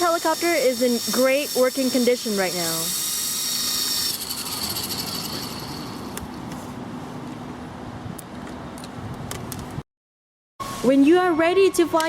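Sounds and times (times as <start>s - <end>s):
electric motors whining: 0.0s - 6.3s.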